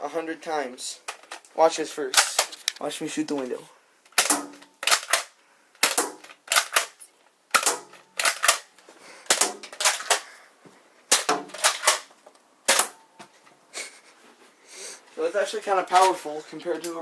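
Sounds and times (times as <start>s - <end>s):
blaster firing sharp cracks: 12.7s - 13.0s.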